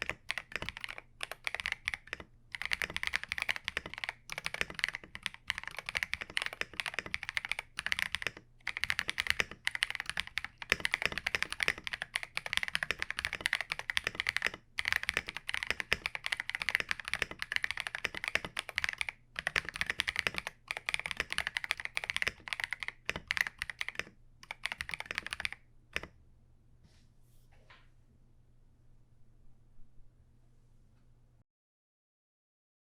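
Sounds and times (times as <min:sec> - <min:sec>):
mechanical keyboard typing: 0:00.0 - 0:26.1.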